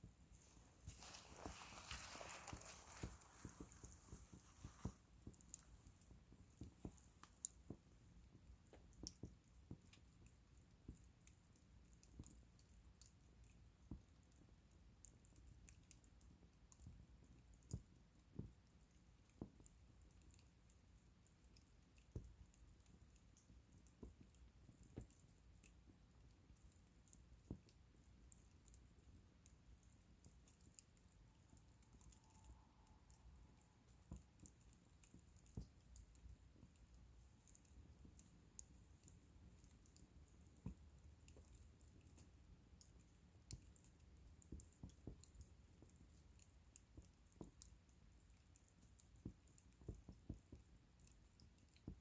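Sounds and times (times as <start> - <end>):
bonfire crackling: 0.3 - 11.4, 26.7 - 52.0.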